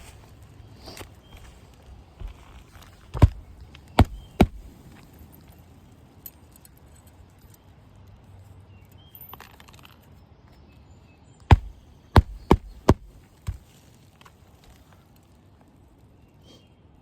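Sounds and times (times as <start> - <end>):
hammer driving nails into shingle: 2.2 - 4.8, 11.5 - 13.6.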